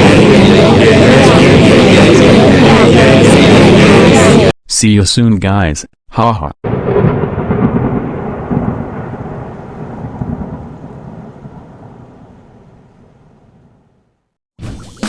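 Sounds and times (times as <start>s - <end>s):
rumbling noise: 6.7s - 12.9s.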